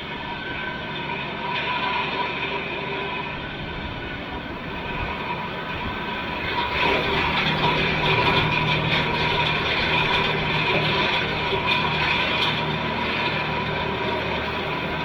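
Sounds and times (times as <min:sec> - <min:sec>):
tractor engine drone: 0:00.0 - 0:15.0.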